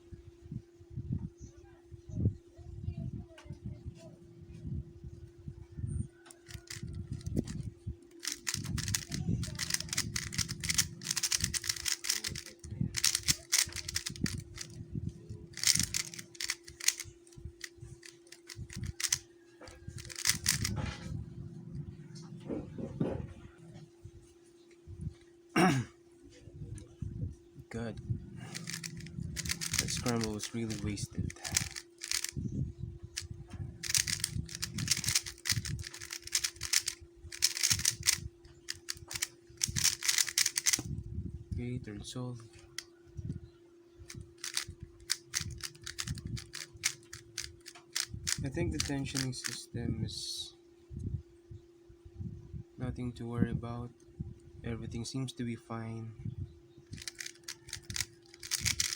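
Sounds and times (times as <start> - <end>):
steady low hum: 0.0 - 58.9
speed cube plastic clicking: 6.4 - 14.8, 15.5 - 17.0, 18.0 - 19.2, 19.9 - 20.7, 28.5 - 32.3, 33.8 - 40.9, 44.1 - 49.5, 57.0 - 58.9.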